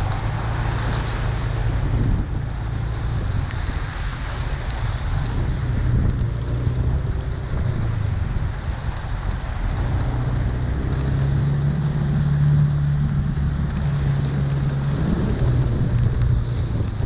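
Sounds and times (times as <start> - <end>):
rushing water: 0.0 - 17.0
vehicle engine running: 0.0 - 17.0.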